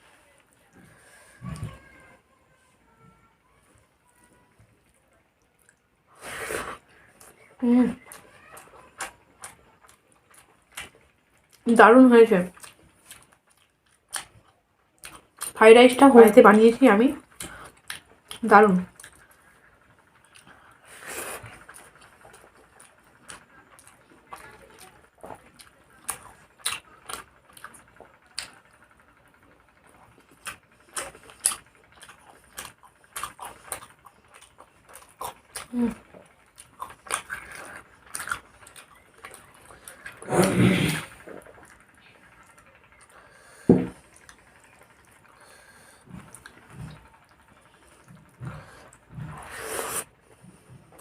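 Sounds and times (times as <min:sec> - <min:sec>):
person chewing and lip smacking: 0:05.6 - 0:05.8, 0:06.7 - 0:11.6, 0:12.5 - 0:15.6, 0:17.3 - 0:28.8, 0:29.9 - 0:40.3, 0:41.2 - 0:50.1
soft mouth sounds: 0:48.1 - 0:50.1
breathy hiss: 0:48.5 - 0:50.3.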